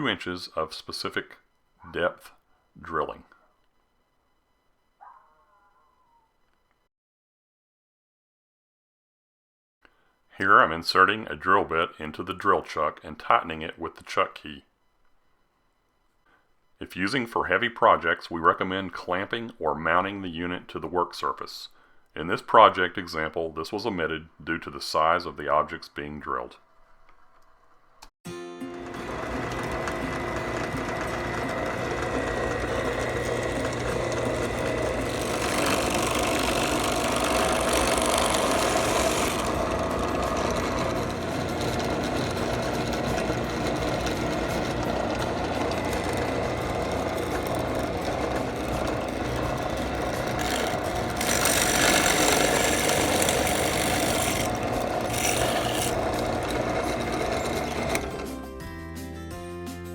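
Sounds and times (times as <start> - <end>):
drill press motor drone: 28.7 - 58.5
drill bit cutting workpiece: 28.8 - 58.5.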